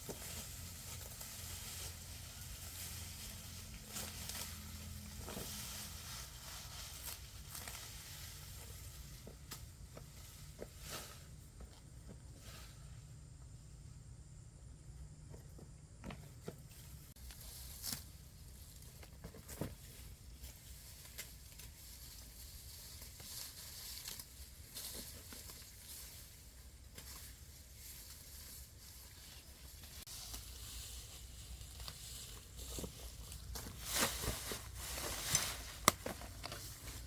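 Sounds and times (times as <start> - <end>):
faint rustling and crackling: 15.3 - 37.0.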